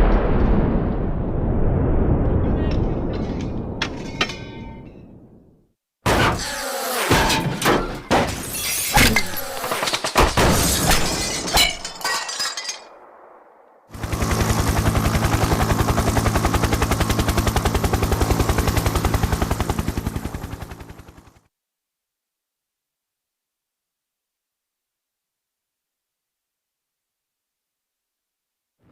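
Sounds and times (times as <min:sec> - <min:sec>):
crashes and shattering impacts: 0:00.0 - 0:05.4, 0:06.1 - 0:13.6
fast-pulsing low drone: 0:14.0 - 0:21.4.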